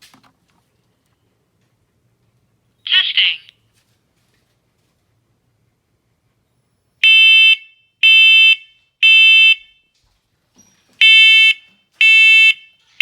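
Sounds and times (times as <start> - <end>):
smoke alarm beeping: 7.0 - 9.8, 11.0 - 12.7.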